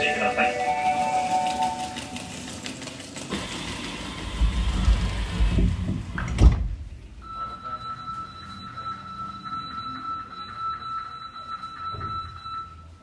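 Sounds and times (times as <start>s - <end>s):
train inverter high whine: 0.0s - 6.1s
sliding doors closing with thud: 1.6s - 7.0s.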